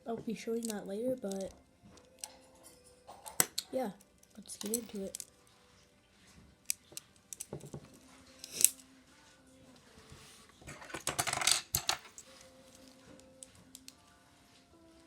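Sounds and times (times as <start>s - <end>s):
plastic pieces clicking and clattering: 0.6s - 2.4s, 4.3s - 5.3s, 6.7s - 8.8s, 10.7s - 14.0s.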